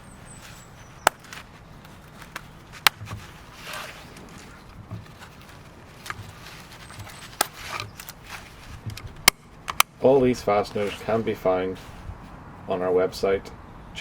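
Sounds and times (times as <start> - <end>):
fabric handling: 0.0 - 9.2
snap fasteners clicking shut: 8.9 - 10.0.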